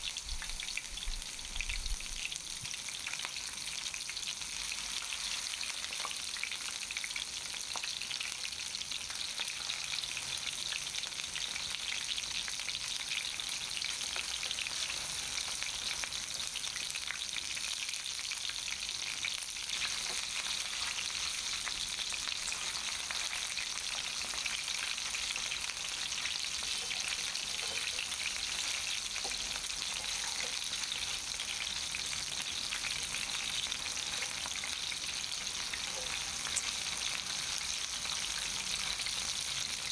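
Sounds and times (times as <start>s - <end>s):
chicken sizzling in hot oil: 0.0s - 39.9s
oil crackling and popping: 18.9s - 36.6s.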